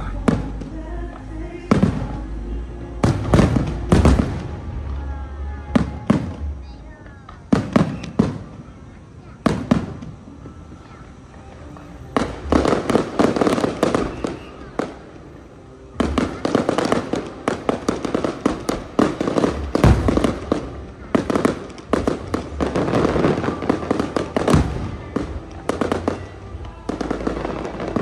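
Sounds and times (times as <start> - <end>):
fireworks popping and crackling: 0.0 - 2.4, 3.0 - 28.0
firework booms: 3.0 - 4.9, 7.4 - 8.7, 16.0 - 28.0.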